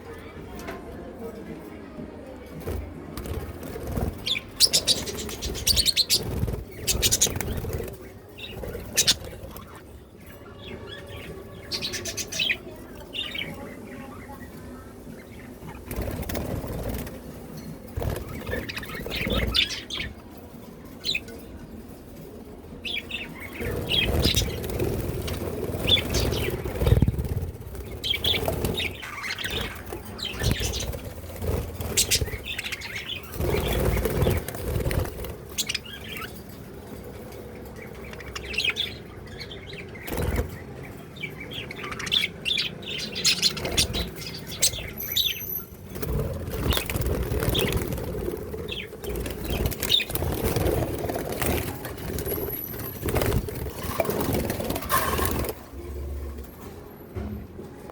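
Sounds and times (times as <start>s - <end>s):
wing flapping: 2.7s - 9.8s, 23.4s - 36.3s, 45.8s - 55.8s
parrots chirping: 23.0s - 31.1s, 31.7s - 36.5s.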